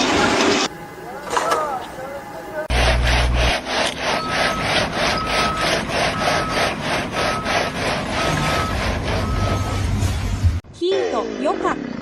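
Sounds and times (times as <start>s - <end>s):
rhythmic rasping scrapes: 2.6s - 10.4s.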